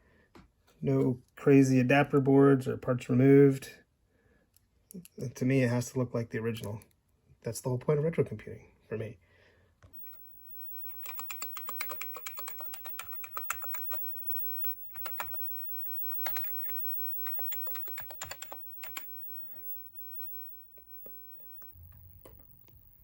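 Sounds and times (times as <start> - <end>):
keyboard typing: 10.0 - 23.0.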